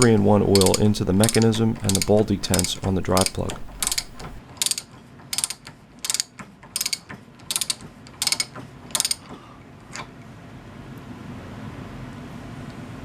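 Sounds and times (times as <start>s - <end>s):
ratchet wrench clicking: 0.0s - 9.2s.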